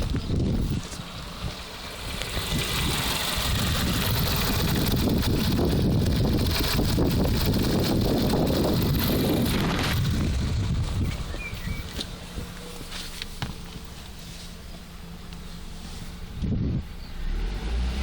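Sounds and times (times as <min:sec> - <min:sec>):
car engine revving: 0:00.7 - 0:12.2, 0:17.0 - 0:18.0.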